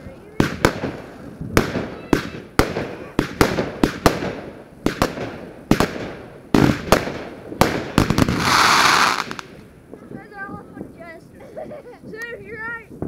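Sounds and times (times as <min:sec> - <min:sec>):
fireworks bangs: 0:00.0 - 0:11.3
firework hissing burst: 0:00.4 - 0:09.6.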